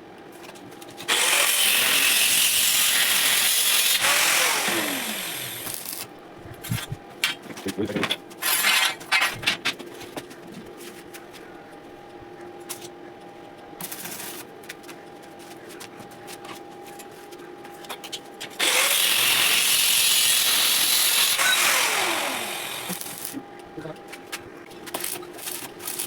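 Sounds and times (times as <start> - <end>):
angle grinder running: 1.1 - 6.1, 18.6 - 23.4.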